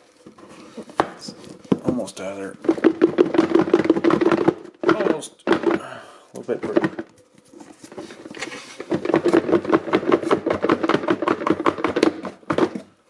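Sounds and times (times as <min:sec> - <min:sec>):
packaging scraping and crinkling: 0:00.0 - 0:05.2, 0:06.4 - 0:10.5.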